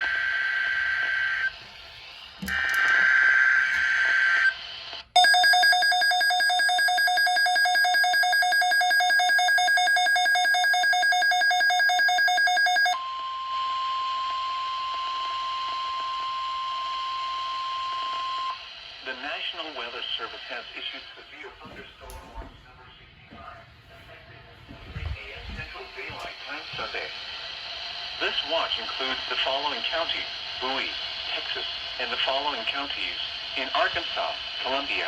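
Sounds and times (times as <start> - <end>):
rapidly pulsing electronic alarm: 5.2 - 18.7
steady single-pitch alarm tone: 5.2 - 18.8.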